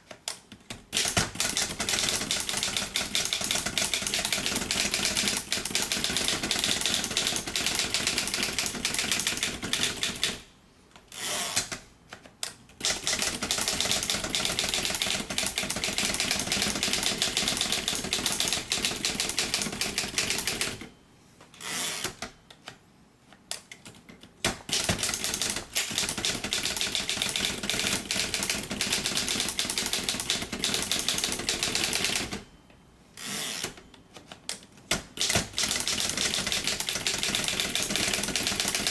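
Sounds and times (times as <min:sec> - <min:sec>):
typewriter clatter: 0:00.9 - 0:10.4, 0:12.8 - 0:20.8, 0:24.5 - 0:32.4, 0:34.9 - 0:38.9.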